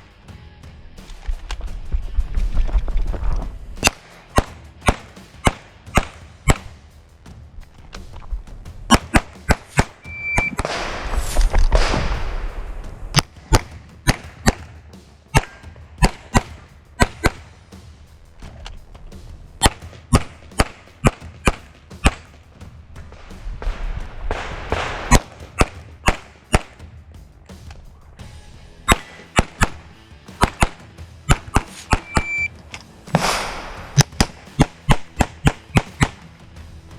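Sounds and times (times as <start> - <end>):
pistol shots: 3.8 - 6.8, 8.9 - 17.6, 19.6 - 22.4, 23.0 - 26.9, 28.9 - 32.5, 33.1 - 36.2
rushing noise: 7.5 - 14.4.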